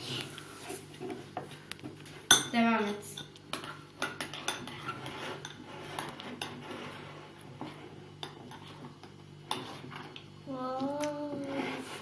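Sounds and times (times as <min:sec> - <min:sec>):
spoons clinking and scraping bowls: 0:00.0 - 0:10.3.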